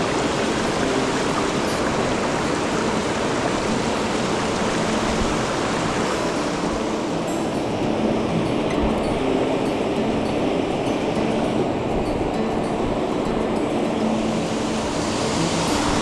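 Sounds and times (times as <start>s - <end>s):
stream water rushing: 0.0s - 16.0s.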